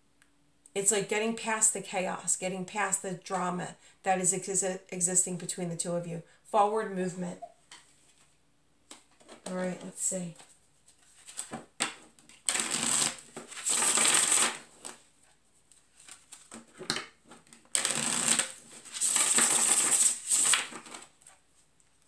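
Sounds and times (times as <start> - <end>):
cards being shuffled: 7.8 - 21.7.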